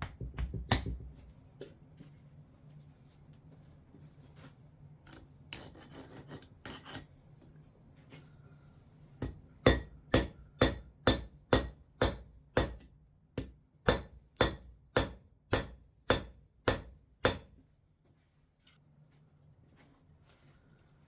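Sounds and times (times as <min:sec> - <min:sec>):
hammer striking steel: 0:09.2 - 0:17.6.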